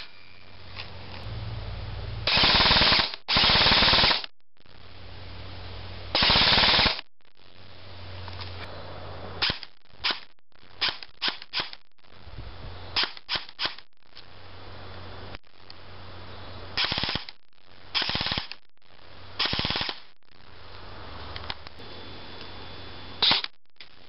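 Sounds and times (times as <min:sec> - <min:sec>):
airsoft gun full-auto bursts: 0:02.3 - 0:04.3, 0:06.2 - 0:07.0, 0:16.8 - 0:18.6, 0:19.4 - 0:20.1
airsoft gun shots: 0:23.2 - 0:23.5.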